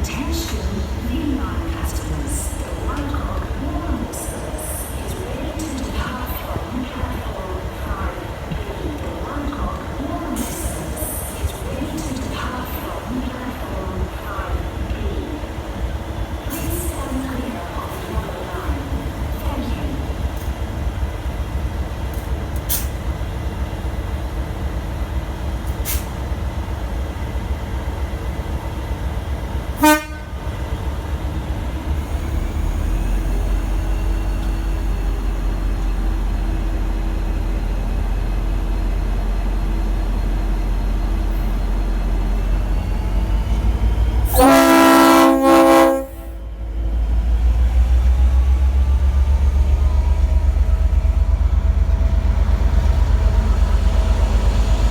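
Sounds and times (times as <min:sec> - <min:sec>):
diesel locomotive engine rumbling: 0:00.0 - 0:54.9
locomotive horn: 0:29.8 - 0:30.4, 0:44.3 - 0:46.4.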